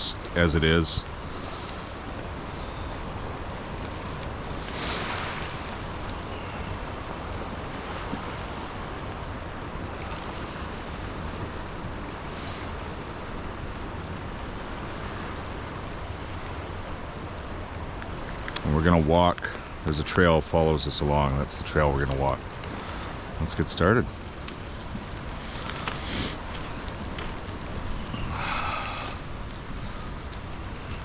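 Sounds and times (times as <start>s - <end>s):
water rushing over a dam: 0.0s - 17.9s.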